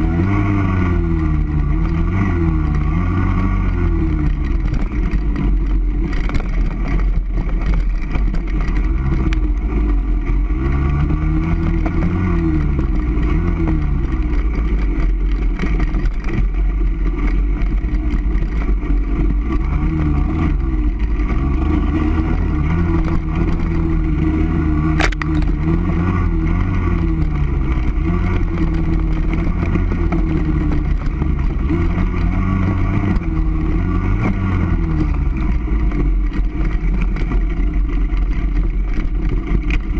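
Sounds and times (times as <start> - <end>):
motorcycle engine revving: 0.0 - 39.9
sharp click: 24.9 - 25.5.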